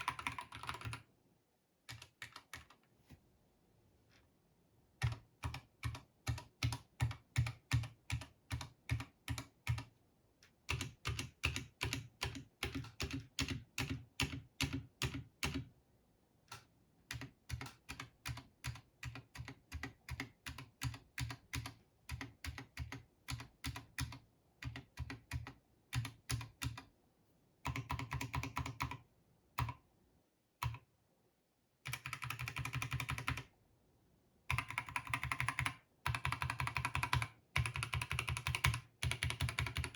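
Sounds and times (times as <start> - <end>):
mechanical keyboard keys clacking: 0.0 - 1.0, 10.7 - 15.7, 31.9 - 33.4, 34.5 - 39.9
rapid typing on keyboard: 0.0 - 1.1, 1.9 - 2.8, 5.0 - 9.9, 10.6 - 15.7, 16.5 - 26.9, 27.6 - 29.8, 31.8 - 33.5, 34.5 - 39.9.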